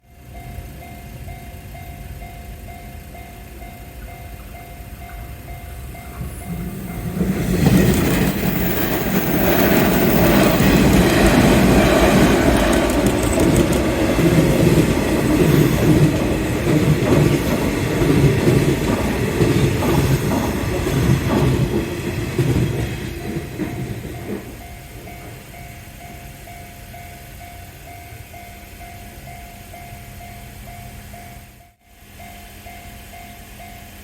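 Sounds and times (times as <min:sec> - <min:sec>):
electric train passing: 0:00.0 - 0:34.0
wheels clacking over rail joints: 0:06.0 - 0:25.6.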